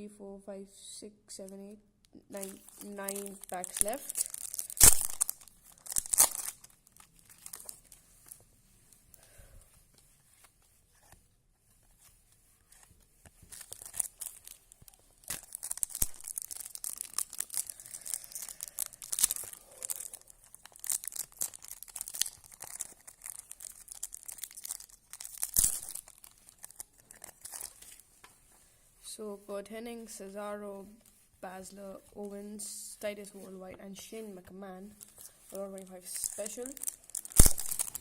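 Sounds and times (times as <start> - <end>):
wrapper tearing and crinkling: 2.3 - 8.4, 12.8 - 28.0, 35.0 - 38.0
cards being handled: 2.3 - 9.0, 9.6 - 28.5, 35.0 - 38.0.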